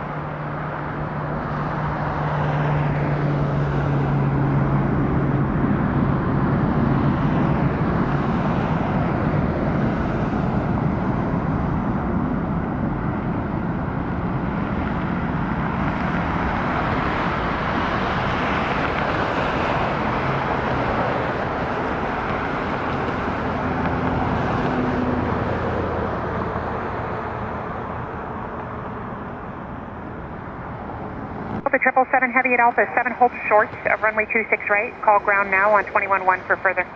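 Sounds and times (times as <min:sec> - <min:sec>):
jet engines rushing: 0:00.0 - 0:36.9.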